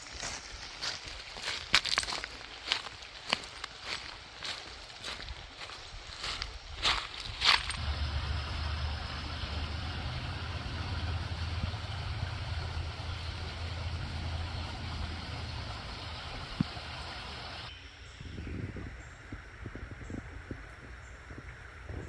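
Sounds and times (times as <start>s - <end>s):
low even rumble: 7.8s - 17.0s
creek water rushing: 7.8s - 17.7s.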